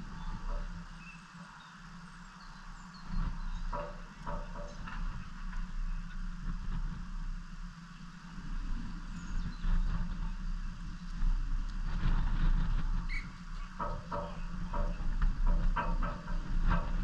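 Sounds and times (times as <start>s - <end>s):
low crowd rumble: 0.0s - 17.0s
faint knocks: 13.6s - 17.0s.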